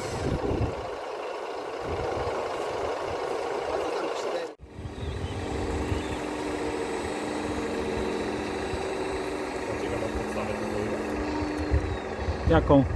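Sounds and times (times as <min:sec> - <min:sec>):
wind buffeting microphone: 0:00.0 - 0:01.0, 0:01.8 - 0:03.3, 0:04.6 - 0:12.9
mechanical hum: 0:00.0 - 0:12.9
droning hum with even tones: 0:04.6 - 0:12.9.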